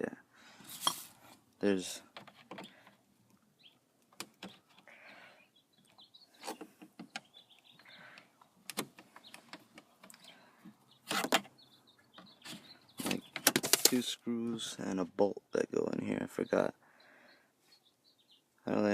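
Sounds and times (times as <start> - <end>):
short scraping sounds: 0.6 - 1.4.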